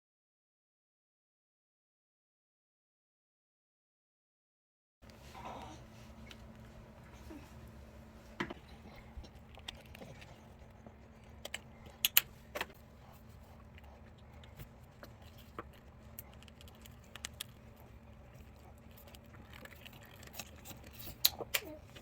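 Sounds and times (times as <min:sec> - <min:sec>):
low steady hum: 0:05.0 - 0:22.0.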